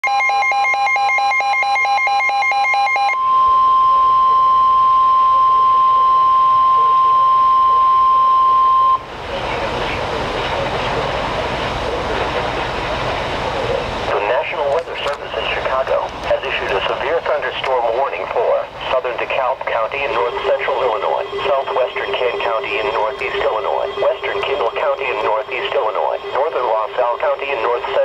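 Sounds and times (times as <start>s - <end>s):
steady noisy hiss: 9.0s - 28.0s
rapid electronic beeps: 20.0s - 28.0s
steady alert tone: 20.0s - 28.0s.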